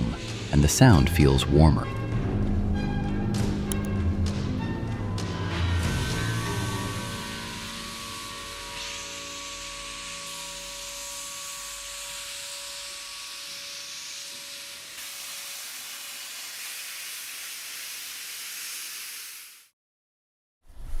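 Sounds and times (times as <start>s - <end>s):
steam hissing from locomotive: 5.8s - 19.7s.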